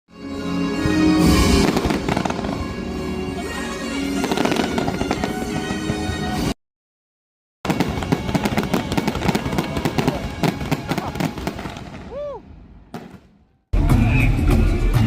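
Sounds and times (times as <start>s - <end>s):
loud show music: 0.2s - 6.5s, 13.8s - 15.0s
fireworks cracking and banging: 1.2s - 2.8s, 4.2s - 6.6s, 7.7s - 13.4s.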